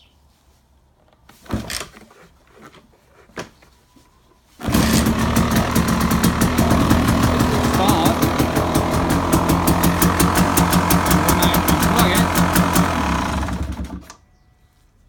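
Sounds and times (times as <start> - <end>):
dirt bike engine running: 4.6 - 14.1
dirt bike kickstart knocks: 4.6 - 14.2.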